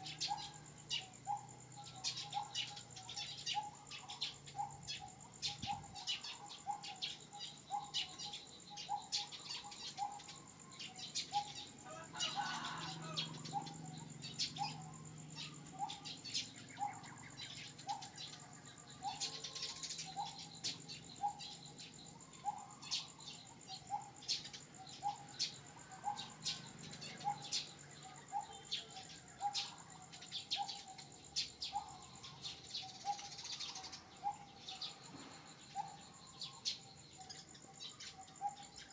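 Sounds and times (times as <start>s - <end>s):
high insect whine: 0.0s - 38.9s
bird rising call: 11.3s - 18.4s.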